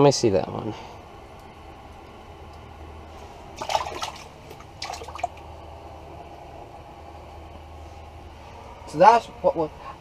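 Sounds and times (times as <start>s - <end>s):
steady low hum: 0.0s - 10.0s
water splashing: 3.6s - 5.4s.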